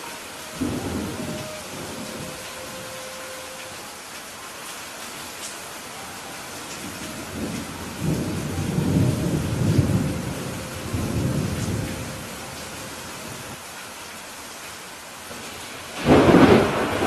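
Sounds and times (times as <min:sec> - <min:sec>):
thunder rumbling: 0:00.0 - 0:03.8, 0:06.2 - 0:13.6, 0:15.9 - 0:17.0
steady rain: 0:00.0 - 0:17.0.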